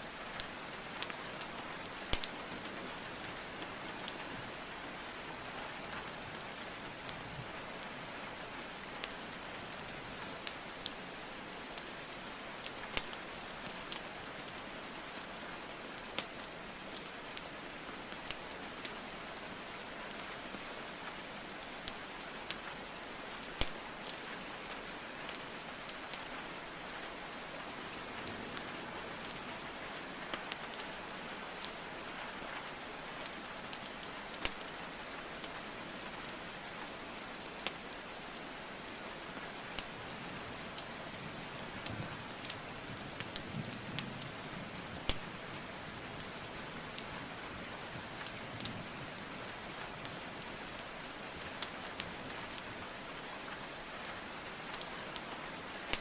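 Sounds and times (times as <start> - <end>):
rain hiss: 0.0 - 56.0
wood fire crackling and popping: 0.2 - 2.5, 11.8 - 14.8, 18.1 - 18.9, 21.5 - 24.2, 33.2 - 34.8, 37.6 - 38.0, 39.7 - 40.0, 41.5 - 44.1, 44.9 - 45.4, 47.7 - 49.0, 49.8 - 52.7, 54.0 - 56.0.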